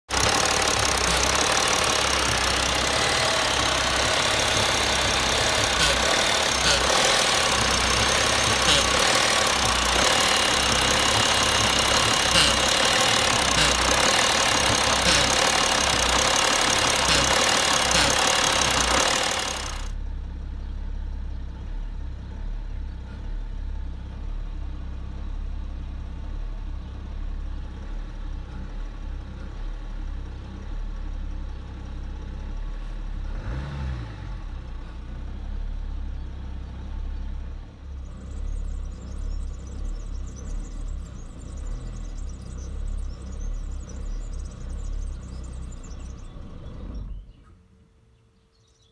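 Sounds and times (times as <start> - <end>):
diesel engine idling roughly: 0.0 - 33.6.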